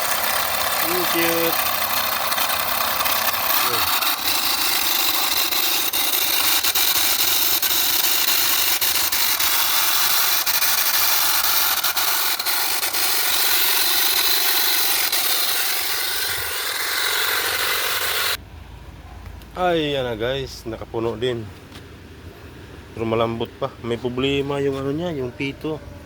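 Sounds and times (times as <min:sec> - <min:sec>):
compressor whine: 0:00.0 - 0:18.4
mini compressor running: 0:00.0 - 0:18.4.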